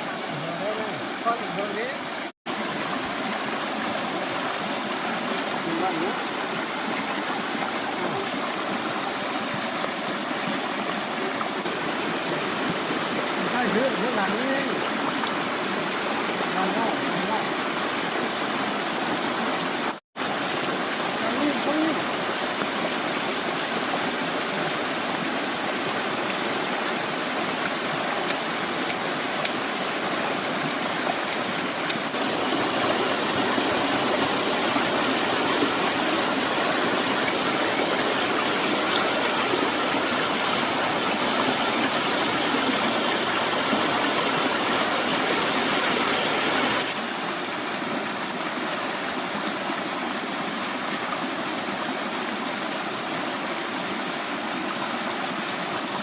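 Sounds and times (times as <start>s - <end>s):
stream water rushing: 0.0s - 56.0s.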